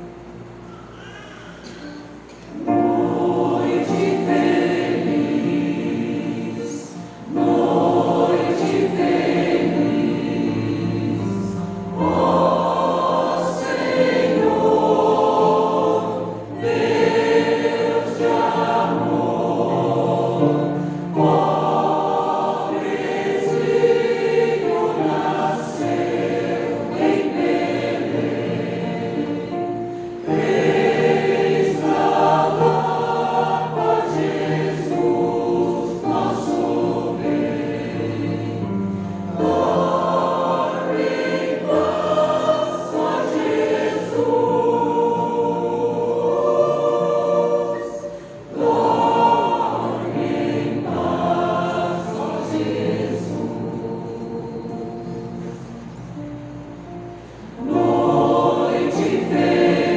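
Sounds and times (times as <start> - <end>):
choir singing a hymn: 0.0 - 59.9.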